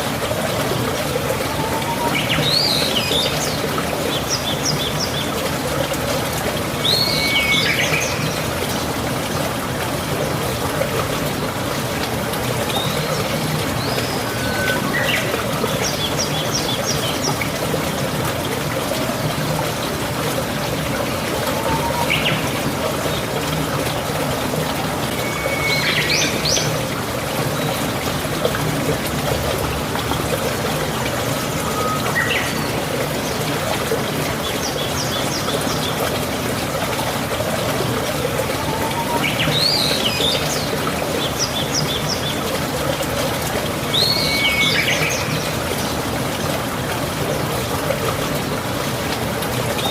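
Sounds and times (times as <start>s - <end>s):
water running like a stream: 0.0s - 49.9s
birds chirping and trilling: 12.8s - 17.4s, 21.5s - 22.5s.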